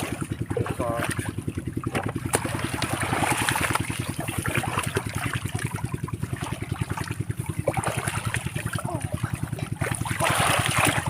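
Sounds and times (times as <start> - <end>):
small engine running: 0.0 - 11.0
water splashing and trickling: 0.0 - 11.0.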